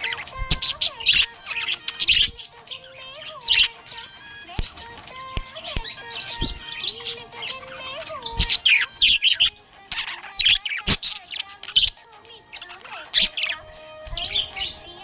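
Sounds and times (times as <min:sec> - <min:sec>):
budgerigar chirping: 0:00.0 - 0:15.0.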